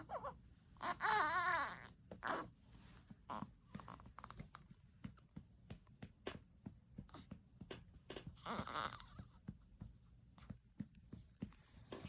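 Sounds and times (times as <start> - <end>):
newborn baby crying: 0.0 - 2.5, 8.4 - 9.2
soft pats on baby's back: 0.0 - 12.0.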